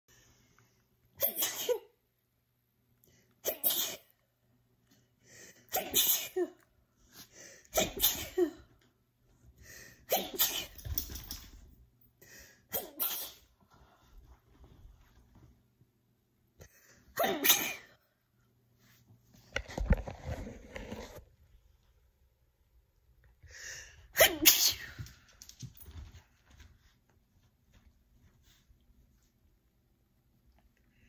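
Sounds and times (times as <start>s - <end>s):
person sneezing: 1.2s - 2.0s, 3.4s - 4.1s, 5.7s - 6.7s, 7.7s - 8.6s, 10.1s - 10.9s, 12.7s - 13.5s, 17.1s - 18.0s, 24.1s - 25.1s.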